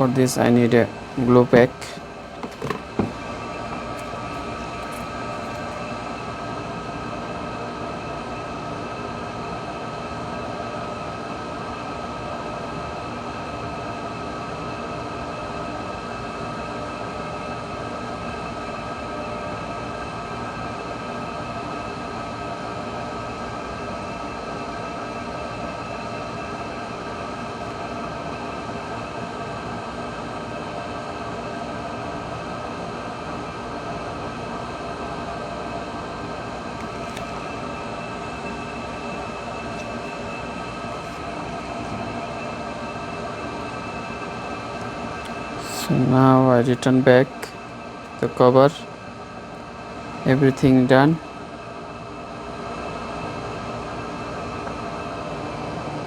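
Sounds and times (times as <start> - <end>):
constant hiss: 0.0 - 6.0
droning hum: 0.0 - 9.0, 35.4 - 49.0.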